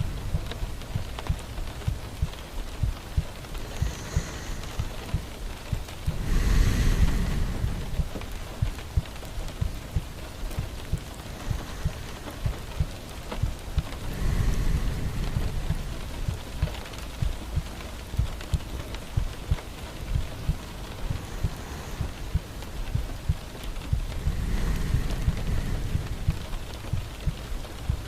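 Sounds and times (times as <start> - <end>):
rushing noise: 0.0 - 28.0
steady rain falling: 0.0 - 28.0.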